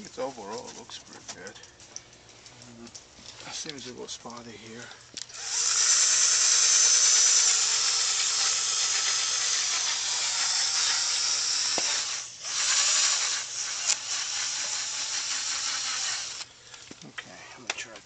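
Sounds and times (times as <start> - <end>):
drill sanding plastic: 5.3 - 16.5.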